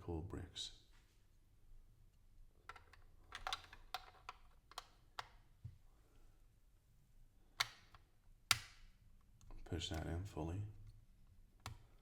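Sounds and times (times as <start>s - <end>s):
plastic bricks clicking: 2.6s - 5.4s.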